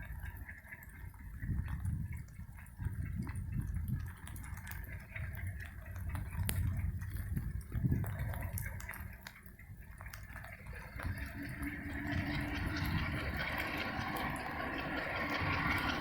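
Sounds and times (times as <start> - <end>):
diesel train rumbling: 10.9 - 16.0.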